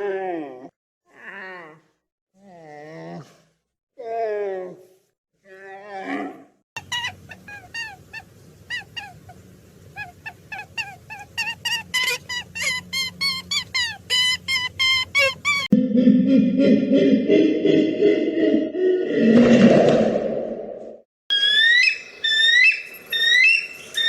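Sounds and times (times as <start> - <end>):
animal wavering moan: 0.0 - 3.4, 4.0 - 4.9.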